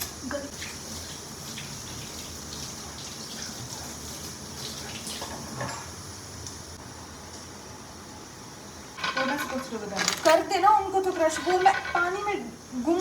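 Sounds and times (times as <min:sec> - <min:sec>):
water running from tap: 0:00.0 - 0:06.2.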